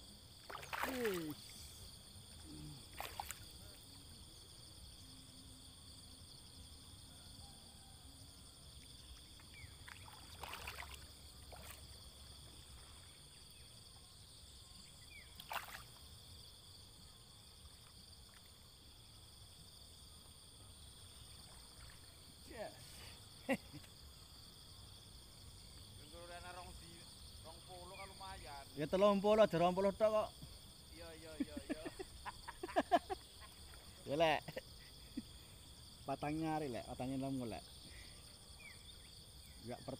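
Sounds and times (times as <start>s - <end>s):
faint high insect hum: 0.0s - 39.9s
water splashes: 0.4s - 1.8s, 2.8s - 3.8s, 9.3s - 13.2s, 15.4s - 16.0s, 21.2s - 22.2s.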